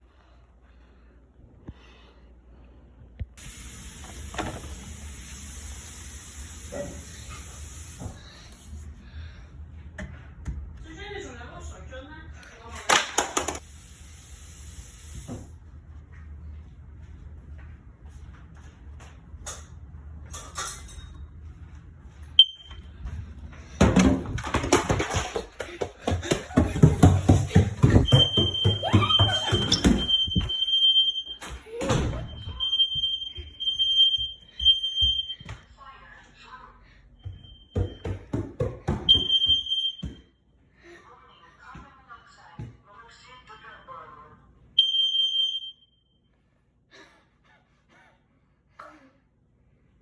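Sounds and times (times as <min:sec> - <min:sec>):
smoke alarm beep: 0:22.4 - 0:22.9, 0:27.9 - 0:31.4, 0:32.2 - 0:35.6, 0:37.2 - 0:38.1, 0:39.1 - 0:40.3, 0:44.8 - 0:46.2.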